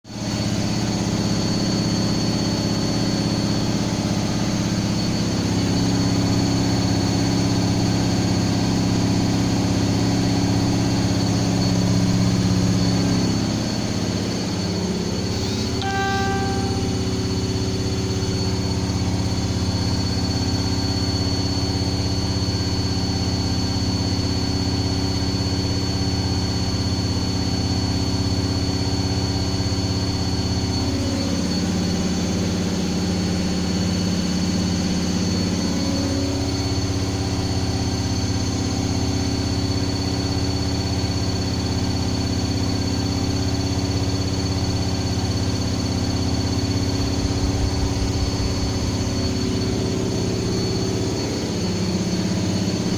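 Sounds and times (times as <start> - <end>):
washing machine spinning: 39.0 - 52.9.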